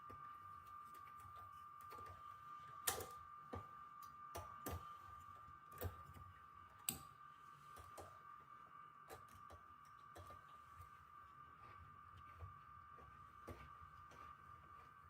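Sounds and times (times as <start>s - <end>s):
faint high hum: 0.0s - 15.0s
light clicks and taps of tools: 6.8s - 7.1s.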